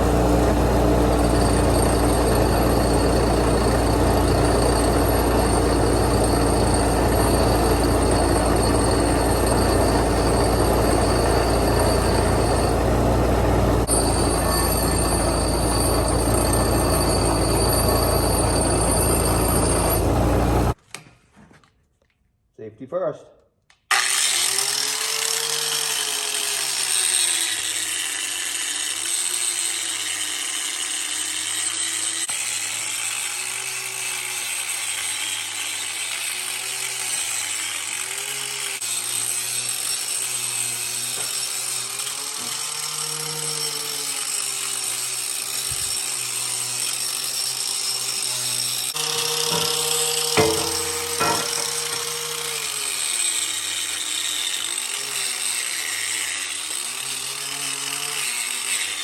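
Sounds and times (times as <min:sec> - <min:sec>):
power tool motor under load: 0:00.0 - 0:20.8, 0:23.9 - 0:59.0
sharp knocks: 0:49.1 - 0:52.1.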